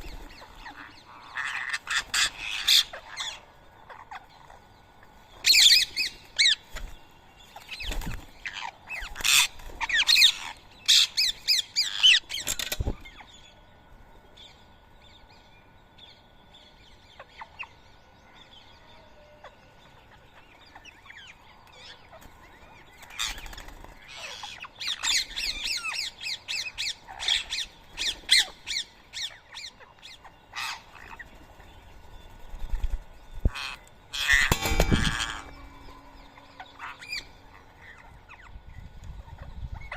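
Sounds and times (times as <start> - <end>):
parakeets squawking: 0.3 - 4.6, 7.6 - 12.4, 23.2 - 31.3, 33.5 - 38.5.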